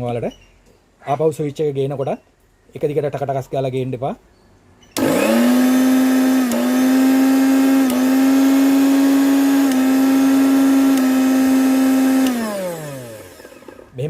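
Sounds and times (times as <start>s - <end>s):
mixer grinder motor whining: 5.0s - 14.0s.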